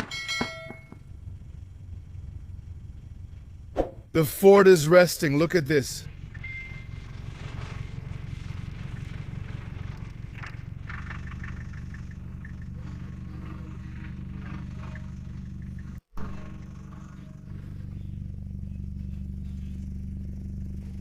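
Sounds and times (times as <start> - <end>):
vehicle engine idling: 0.0 - 21.0
faint ticks and scrapes: 7.3 - 21.0.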